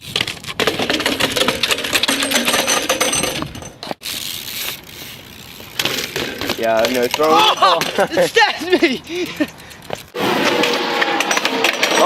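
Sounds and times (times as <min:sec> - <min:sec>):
bike hub ratcheting clicks: 0:03.4 - 0:07.4, 0:08.9 - 0:10.2.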